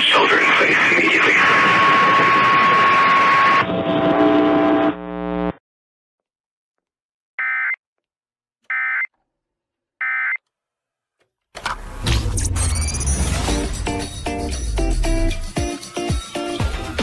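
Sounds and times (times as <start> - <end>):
buzzing electronic tone: 1.6 - 5.6.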